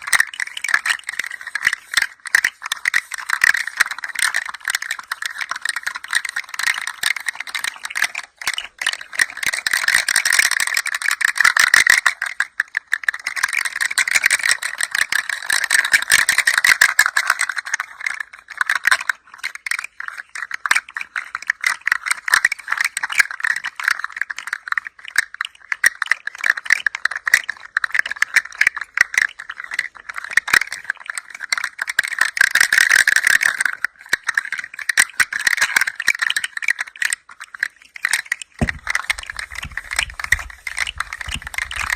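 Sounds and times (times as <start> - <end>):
toy rattling: 0.0 - 11.4, 27.7 - 41.9.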